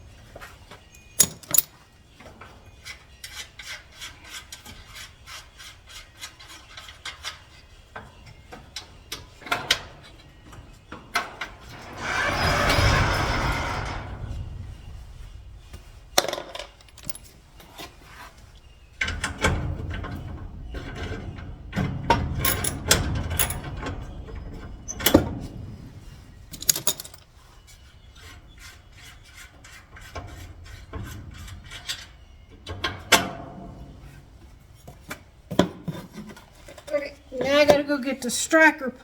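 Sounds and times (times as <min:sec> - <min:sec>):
metal clicks and rubbing of tools: 0:01.2 - 0:01.7.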